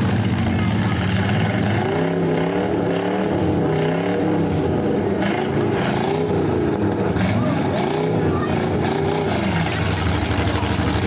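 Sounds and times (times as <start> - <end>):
car engines revving: 0.0 - 11.0.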